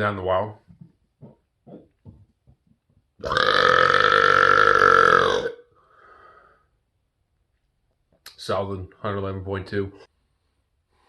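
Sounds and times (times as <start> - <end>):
man belching: 3.2 - 5.7
faint breath: 5.8 - 6.8, 10.2 - 11.0.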